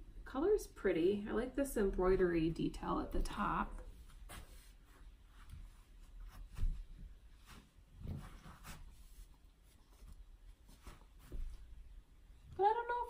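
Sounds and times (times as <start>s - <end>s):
fabric rustling: 3.9s - 12.3s.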